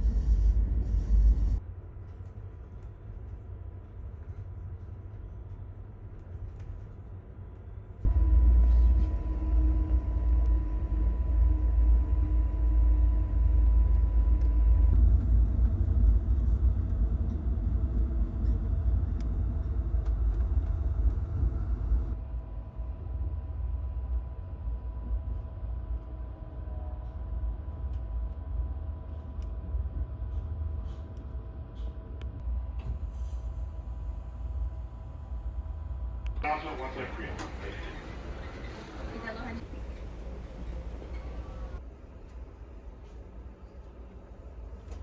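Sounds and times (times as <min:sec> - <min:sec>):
faint steady whine: 0:00.0 - 0:01.6, 0:08.1 - 0:22.9
passenger train rumbling: 0:00.0 - 0:01.8, 0:07.7 - 0:45.0.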